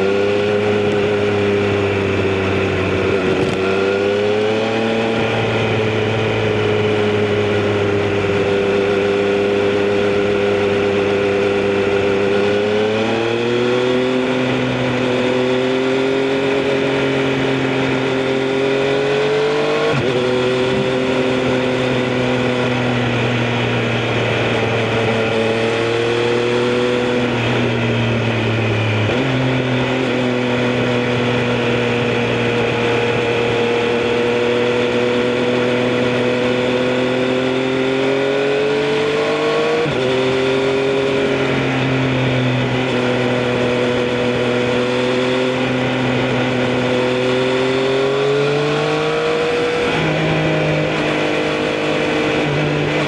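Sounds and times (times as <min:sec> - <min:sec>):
motorcycle engine running: 0:00.0 - 0:53.0
wind and road noise: 0:00.0 - 0:53.0.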